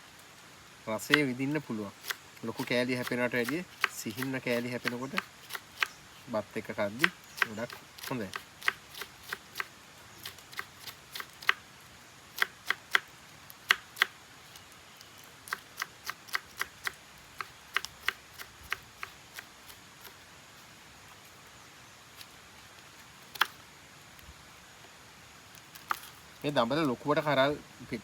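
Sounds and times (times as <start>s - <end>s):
knife slicing beans: 1.1s - 1.4s, 2.0s - 6.0s, 6.9s - 11.6s.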